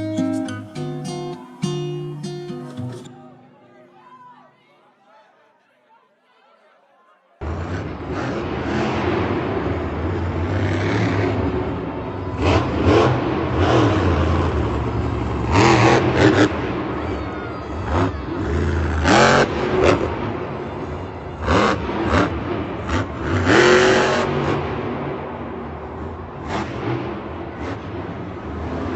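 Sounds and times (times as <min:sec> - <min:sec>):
truck engine revving: 0:07.4 - 0:28.9.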